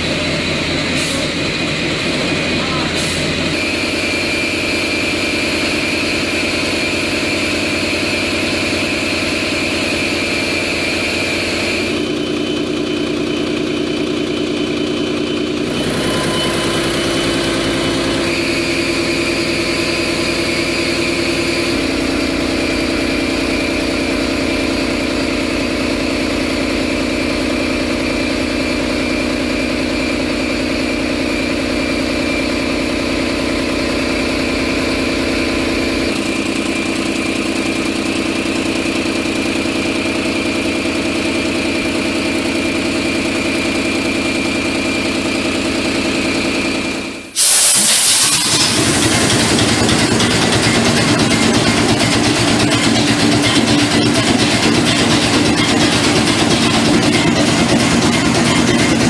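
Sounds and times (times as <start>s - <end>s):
large diesel engines idling: 0.0s - 59.0s.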